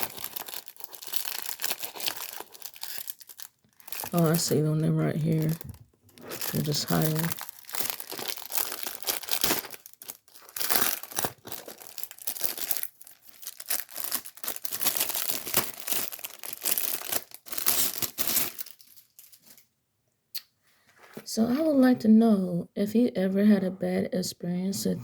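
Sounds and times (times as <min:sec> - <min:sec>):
packaging crinkling and tearing: 0:00.0 - 0:19.7.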